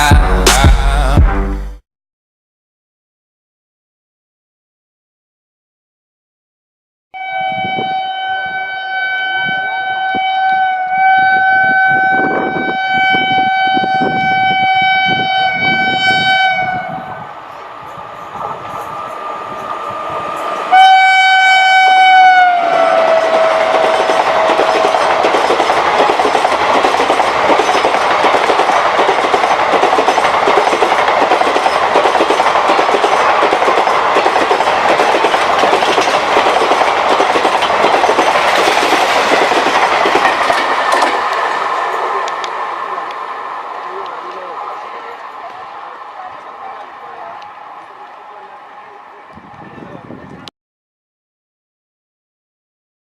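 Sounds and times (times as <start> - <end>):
locomotive horn blast: 7.2 - 17.3, 20.7 - 23.9
train wheels clattering on rail: 23.1 - 43.2.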